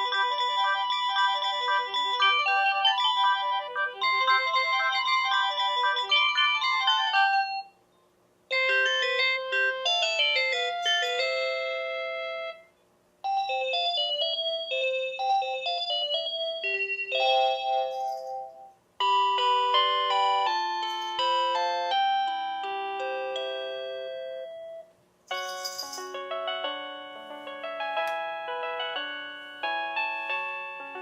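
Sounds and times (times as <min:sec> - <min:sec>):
phone electronic chime melodies: 0:00.0 - 0:07.7.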